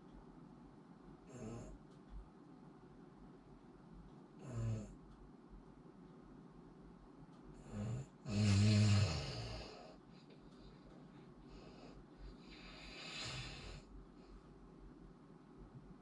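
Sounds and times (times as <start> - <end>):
person snoring: 4.4 - 4.9, 7.6 - 10.0, 12.5 - 13.8
person snorting: 7.7 - 9.9
airy breath: 11.5 - 14.5.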